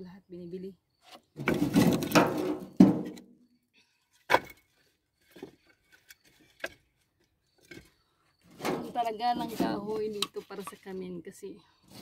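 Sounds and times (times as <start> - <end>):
firewood logs clattering: 1.2 - 3.4, 4.1 - 11.0.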